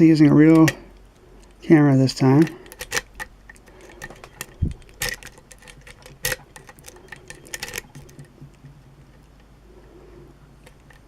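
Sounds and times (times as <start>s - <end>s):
metallic lock picking clicks: 0.2s - 1.6s, 2.4s - 9.5s.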